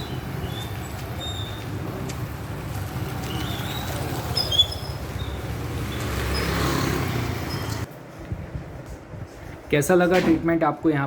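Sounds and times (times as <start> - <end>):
vehicle passing: 0.0 - 8.0
traffic engine rumble: 0.0 - 10.0.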